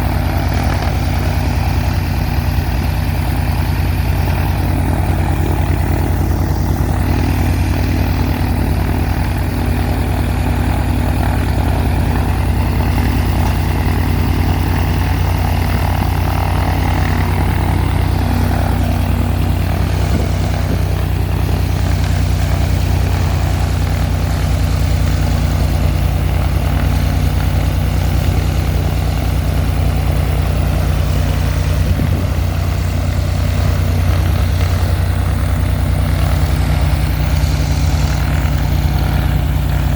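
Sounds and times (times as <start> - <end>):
aircraft piston engine and propeller: 0.0 - 39.9.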